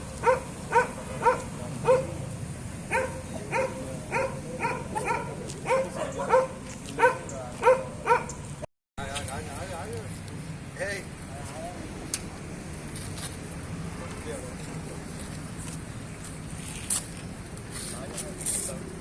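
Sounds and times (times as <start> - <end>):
dog barking: 0.2 - 2.2, 2.9 - 8.4.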